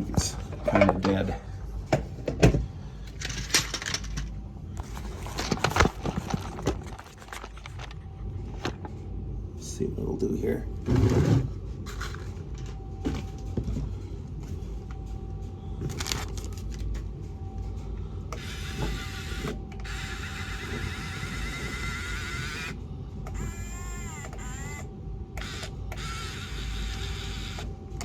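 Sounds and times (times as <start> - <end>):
small electric motors whirring: 18.3 - 27.7.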